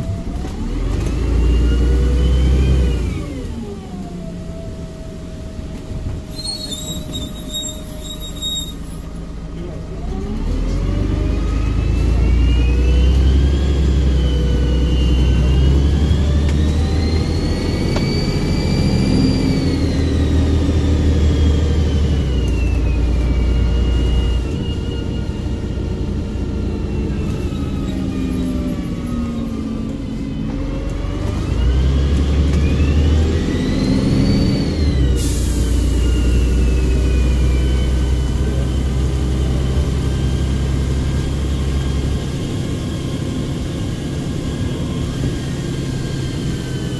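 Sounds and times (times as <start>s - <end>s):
diesel bus engine accelerating: 0.0s - 46.9s
turbo whistle: 6.3s - 9.2s.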